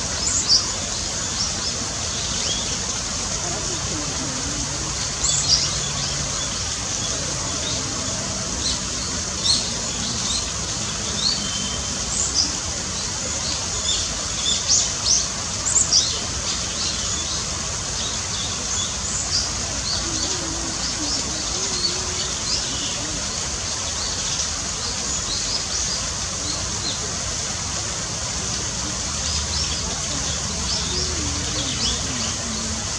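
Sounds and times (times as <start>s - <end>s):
falling water rushing: 0.0s - 32.9s
sparrows chirping: 4.6s - 24.5s, 29.2s - 32.9s.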